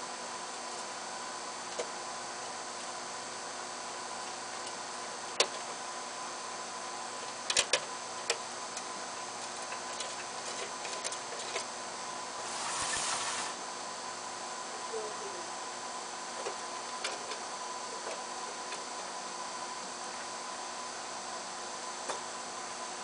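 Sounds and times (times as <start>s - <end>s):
faint hiss and hum: 0.0s - 23.0s
brief rustle: 12.5s - 13.6s.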